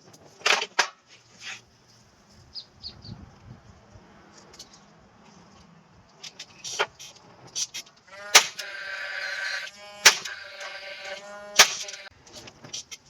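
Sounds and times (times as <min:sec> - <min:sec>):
small motor whining: 0:08.1 - 0:12.1
sharp knock: 0:10.0 - 0:10.4, 0:11.6 - 0:12.0.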